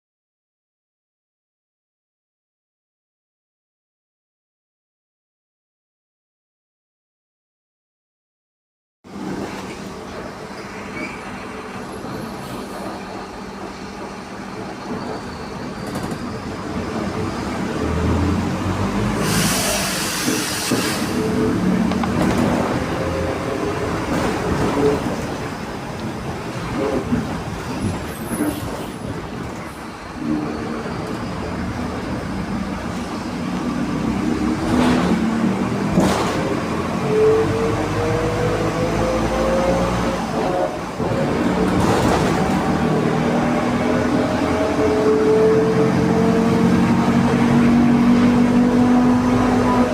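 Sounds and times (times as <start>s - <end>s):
diesel bus engine droning: 11.4s - 27.7s, 30.0s - 49.9s.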